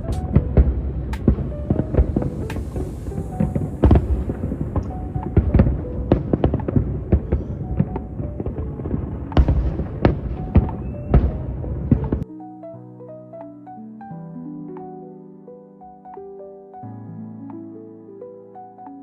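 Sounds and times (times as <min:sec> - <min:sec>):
fireworks exploding: 0:00.0 - 0:12.2
music: 0:00.0 - 0:19.0.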